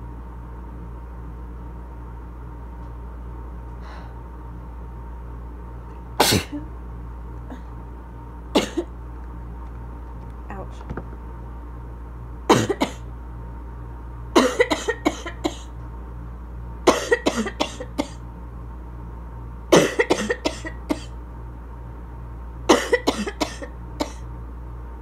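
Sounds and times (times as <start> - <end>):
person coughing harshly: 6.2 - 6.6, 8.6 - 8.9, 12.5 - 13.1, 14.4 - 15.7, 16.9 - 18.2, 19.7 - 21.2, 22.7 - 24.3.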